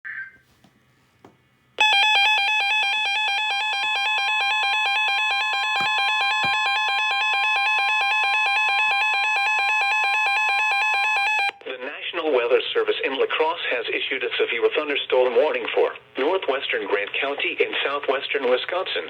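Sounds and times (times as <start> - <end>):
steady warning tone: 1.8 - 11.6.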